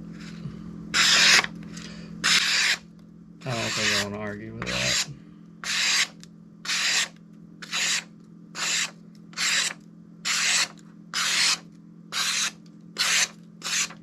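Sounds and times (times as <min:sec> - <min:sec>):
knife scraping sharpening stone: 0:02.2 - 0:02.8, 0:03.5 - 0:06.1, 0:06.7 - 0:08.0, 0:08.6 - 0:09.7, 0:10.3 - 0:11.6, 0:12.2 - 0:13.9.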